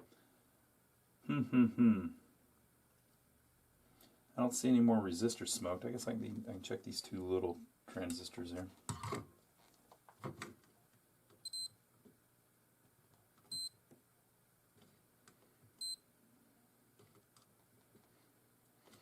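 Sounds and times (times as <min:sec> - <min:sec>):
multimeter beeps: 0:11.4 - 0:11.8, 0:13.5 - 0:13.8, 0:15.8 - 0:16.0.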